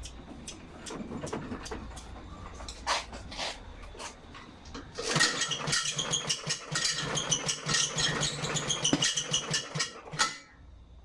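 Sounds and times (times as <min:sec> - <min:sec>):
lawnmower engine running roughly: 0:05.0 - 0:10.5.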